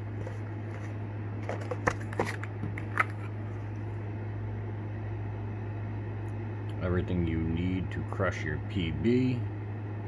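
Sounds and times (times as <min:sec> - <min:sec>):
cardboard packaging rustling: 0:00.0 - 0:03.9
steady low hum: 0:00.0 - 0:10.0.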